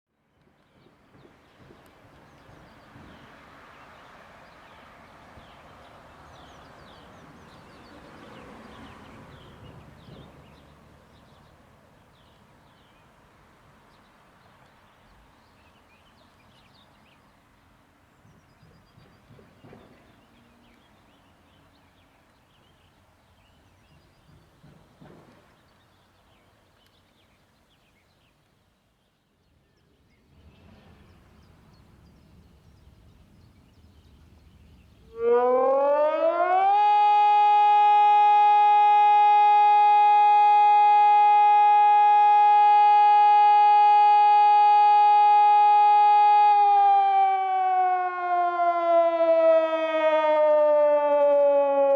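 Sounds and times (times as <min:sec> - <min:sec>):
electronic siren rising to steady tone: 0:35.1 - 0:51.9.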